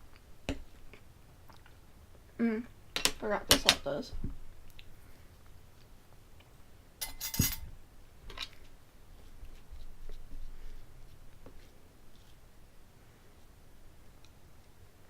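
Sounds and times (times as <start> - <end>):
tableware clicking: 7.0 - 7.7.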